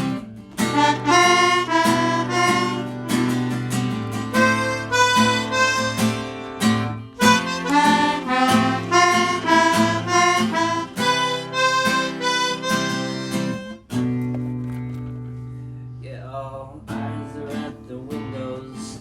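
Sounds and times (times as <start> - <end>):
harmonica melody: 0.0 - 14.4
strummed acoustic guitar: 0.0 - 16.1, 16.8 - 19.0.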